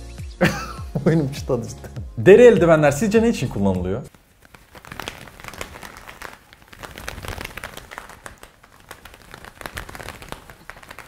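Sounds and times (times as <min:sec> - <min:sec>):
leather gloves crackling: 0:04.1 - 0:11.0.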